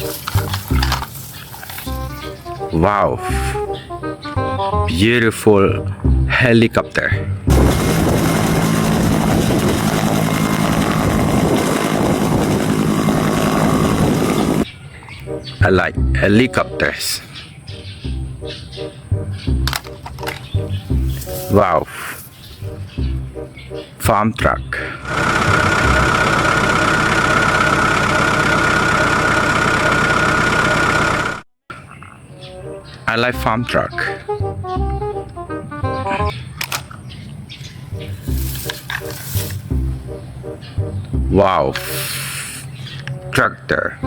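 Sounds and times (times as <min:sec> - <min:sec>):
high whine: 0:07.5 - 0:14.6
helicopter engine and rotor: 0:07.5 - 0:14.7, 0:25.0 - 0:31.4.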